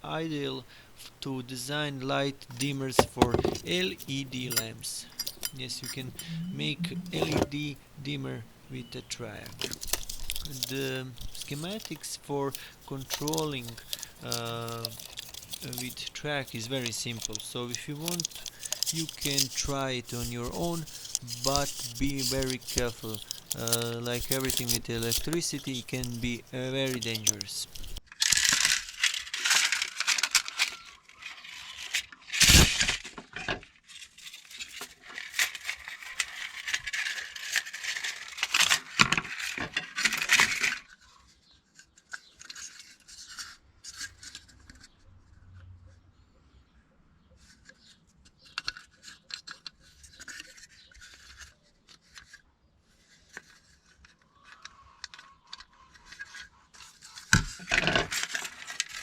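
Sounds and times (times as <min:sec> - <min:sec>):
scraping and rustling: 0:02.4 - 0:06.4, 0:09.2 - 0:45.0, 0:47.4 - 0:59.0
sharp clicks and clinks: 0:02.5 - 0:07.6, 0:09.4 - 0:28.0.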